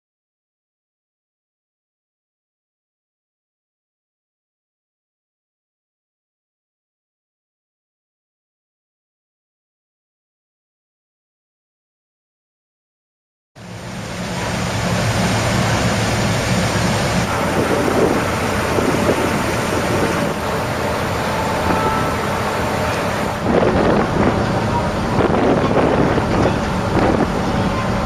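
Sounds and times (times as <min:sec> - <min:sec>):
car engine hum: 0:13.6 - 0:27.9
wind noise: 0:13.7 - 0:28.0.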